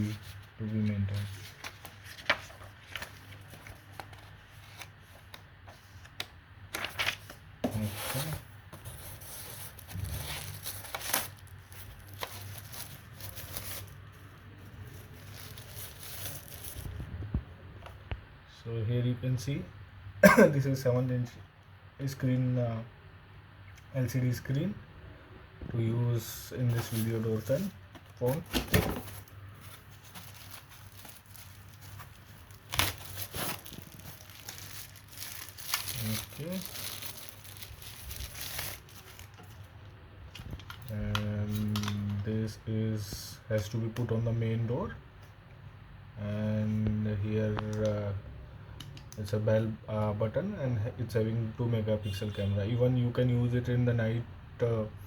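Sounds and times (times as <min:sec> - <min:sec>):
packaging crinkling and rustling: 0:00.8 - 0:17.4, 0:26.7 - 0:39.7.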